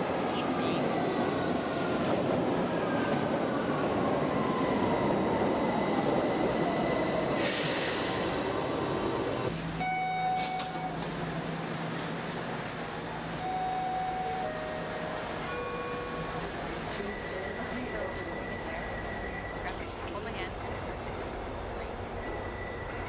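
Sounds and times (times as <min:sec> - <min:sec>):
subway train whine: 0:00.0 - 0:23.0.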